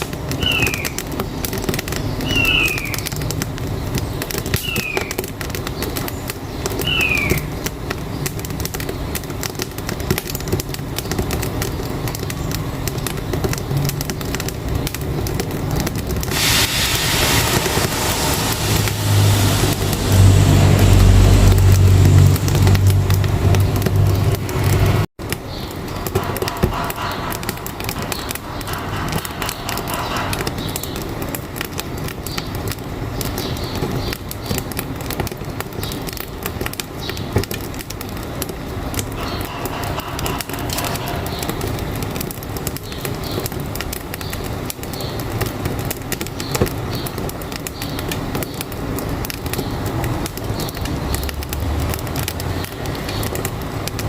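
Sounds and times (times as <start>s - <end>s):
firewood crackling in a stove: 0.0s - 54.0s
truck engine running: 16.5s - 25.1s.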